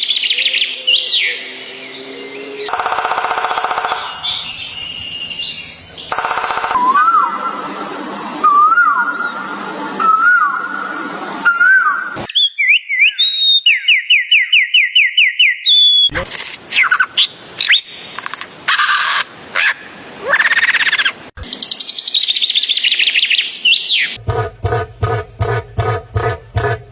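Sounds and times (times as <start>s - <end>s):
bird chirping: 0.0s - 7.3s, 11.5s - 24.2s
pulsing animal call: 24.2s - 26.9s.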